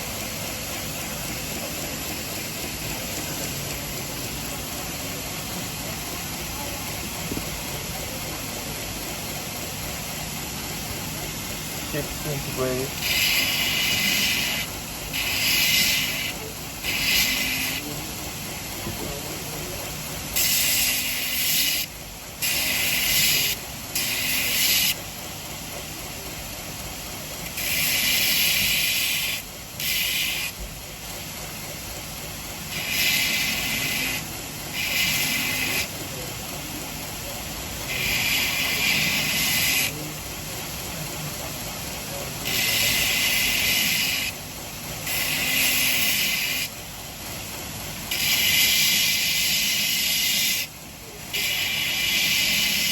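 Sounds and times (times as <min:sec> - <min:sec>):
belt grinder running: 0:00.0 - 0:25.1, 0:25.7 - 0:52.9
steel hissing on abrasive belt: 0:00.0 - 0:52.9.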